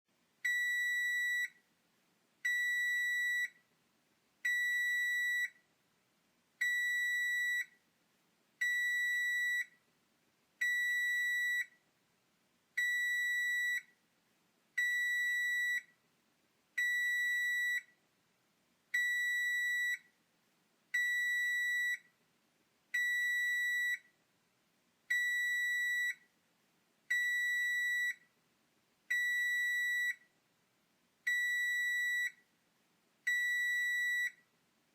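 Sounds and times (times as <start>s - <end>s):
oven timer beeping: 0.4s - 1.6s, 6.6s - 7.7s, 10.6s - 11.7s, 33.3s - 34.4s.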